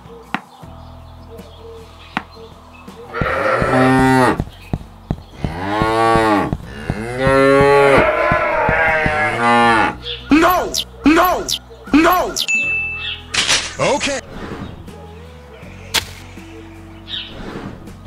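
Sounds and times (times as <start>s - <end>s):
cow mooing: 3.1s - 4.4s, 5.4s - 11.5s.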